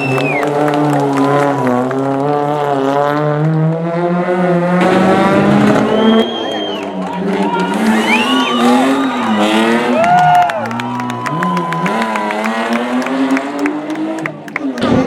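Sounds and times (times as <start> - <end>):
high whistle-like glides: 0.0 - 0.5, 5.7 - 7.0, 7.6 - 9.8
rally car engine running: 0.0 - 15.0.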